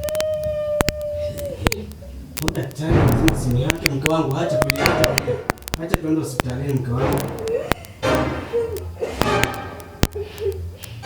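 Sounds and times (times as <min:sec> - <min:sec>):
sharp clicks: 0:00.0 - 0:11.0
high wailing cry: 0:04.3 - 0:05.8.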